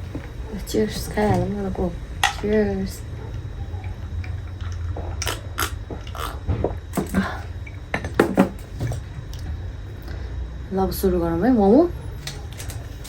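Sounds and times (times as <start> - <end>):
low hum: 0.0 - 13.0.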